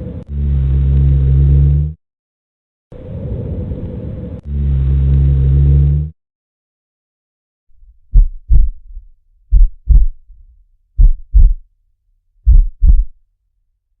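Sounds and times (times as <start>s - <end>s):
heartbeat through stethoscope: 8.0s - 10.4s, 11.0s - 11.6s, 12.4s - 13.2s.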